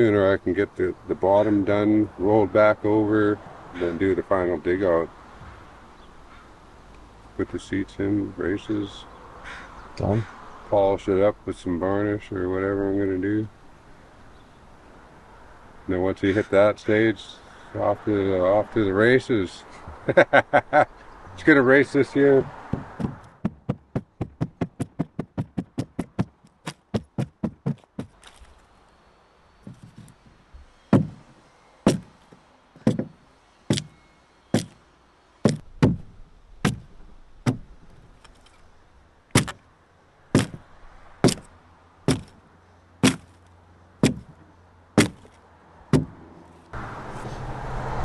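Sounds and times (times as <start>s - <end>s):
hand tool chopping wood: 22.7s - 28.4s, 29.7s - 30.2s, 30.9s - 31.2s, 31.8s - 32.1s, 32.8s - 34.8s, 35.4s - 37.6s, 39.3s - 39.6s, 40.4s - 40.6s, 41.2s - 41.5s, 42.1s - 42.4s, 43.0s - 43.4s, 44.0s - 44.4s, 45.0s - 46.2s.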